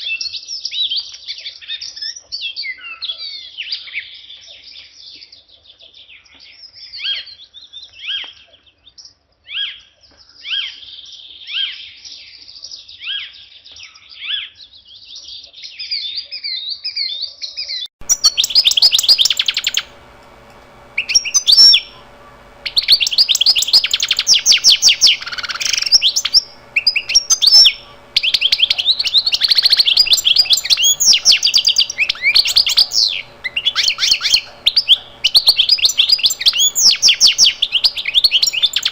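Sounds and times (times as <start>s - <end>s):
birds chirping and trilling: 18.0s - 38.9s
faint steady hum: 18.0s - 38.9s.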